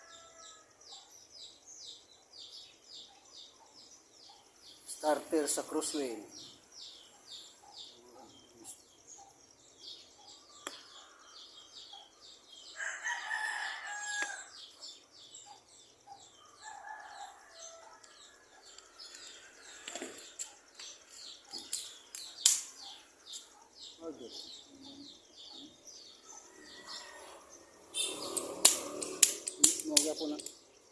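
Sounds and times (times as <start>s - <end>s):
rooster crowing: 0.0s - 0.8s, 12.7s - 14.6s, 16.5s - 20.0s, 26.3s - 29.2s.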